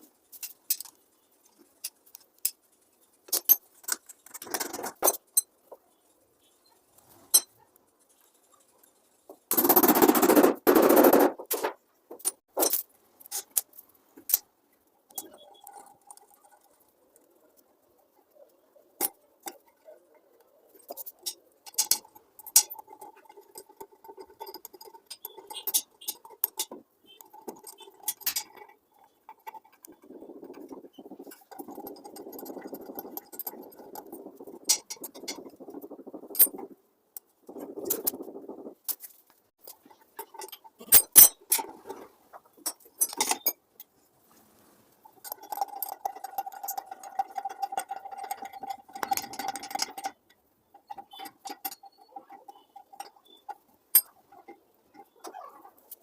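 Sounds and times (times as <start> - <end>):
hard objects clinking and knocking: 20.8 - 36.7, 45.1 - 56.0.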